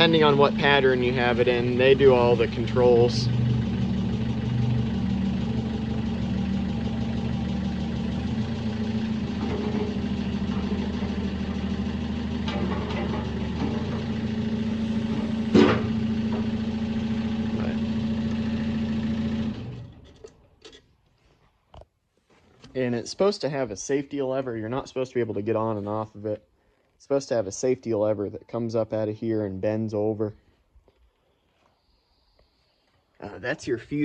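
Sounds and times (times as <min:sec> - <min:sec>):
engine knock: 0:00.0 - 0:19.7
diesel engine idling: 0:00.0 - 0:20.0.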